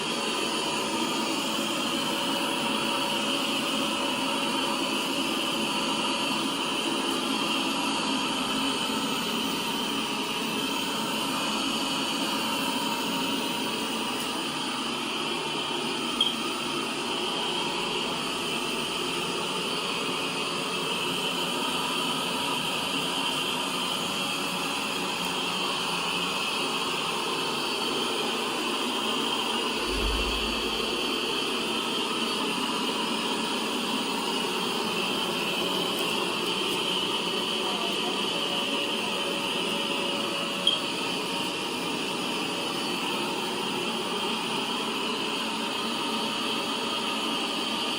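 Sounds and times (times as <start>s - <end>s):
robot vacuum fan whine: 0.0s - 47.9s
low bump: 29.8s - 31.0s.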